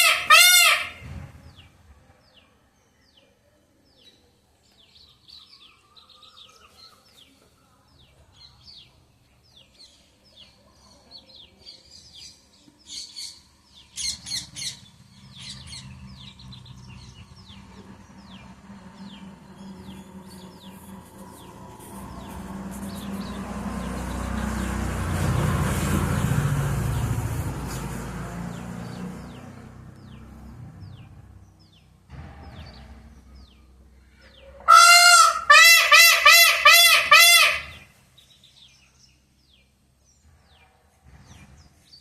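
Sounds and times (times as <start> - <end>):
peafowl calling: 0.0 - 1.1, 34.4 - 37.9
small birds chirping: 0.0 - 35.5, 36.6 - 42.0.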